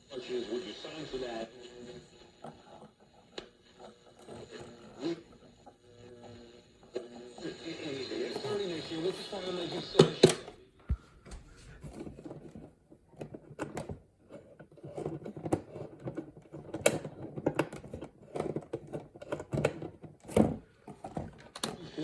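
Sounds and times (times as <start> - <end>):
radio static clicks and crackle: 0.0 - 12.1, 21.6 - 22.0
faint broken broadcast fragments: 0.0 - 12.7.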